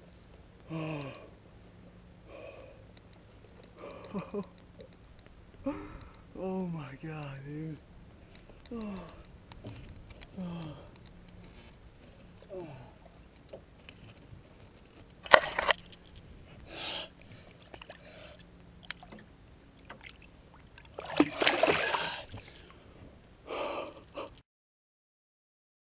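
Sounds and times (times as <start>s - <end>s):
water splashing: 17.4s - 22.7s.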